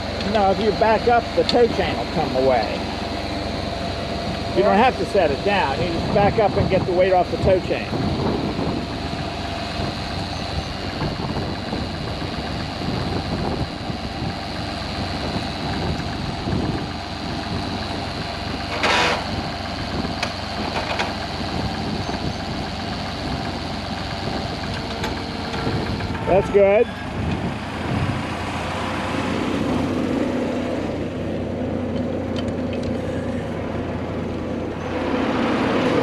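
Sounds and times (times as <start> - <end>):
high whine: 0.0 - 19.4
tractor engine running: 0.0 - 36.0.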